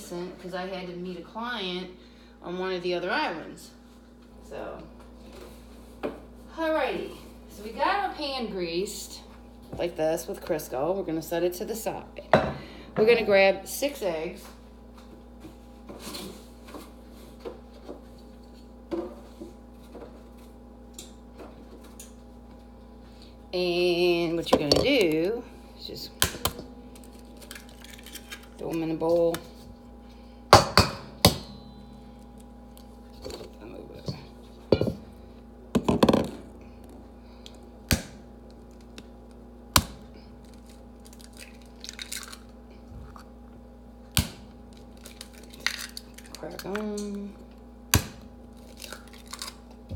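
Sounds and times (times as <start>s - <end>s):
faint steady hum: 0.0s - 49.9s
eggshell crunching: 40.4s - 43.3s, 48.5s - 49.8s.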